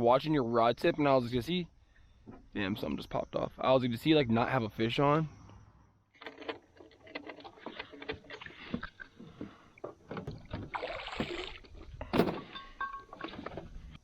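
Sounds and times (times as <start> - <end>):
gear knocking and clattering in a boat: 6.2 - 11.3, 11.9 - 13.9.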